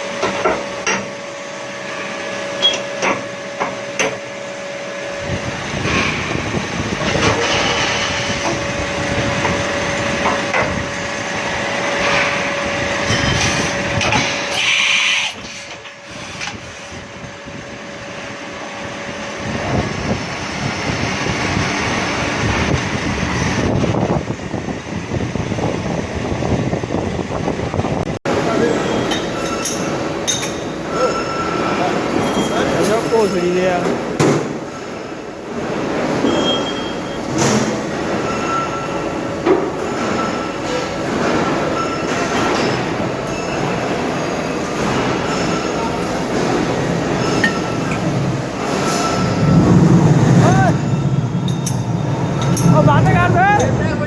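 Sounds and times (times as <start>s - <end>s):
machine hum: 28.3s - 54.0s.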